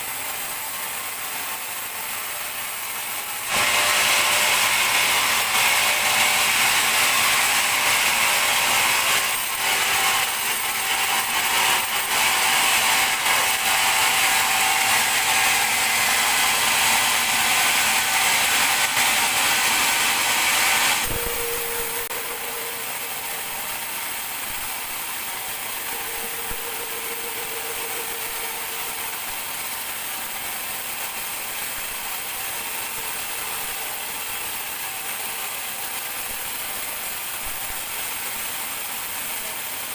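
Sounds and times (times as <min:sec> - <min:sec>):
band saw cutting log: 0:00.0 - 0:39.8
machine running with faint hum: 0:00.0 - 0:39.9.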